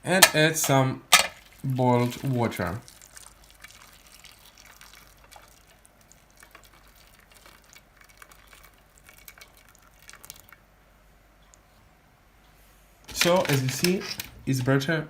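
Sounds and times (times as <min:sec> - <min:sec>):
faint water drips: 0:01.4 - 0:10.8.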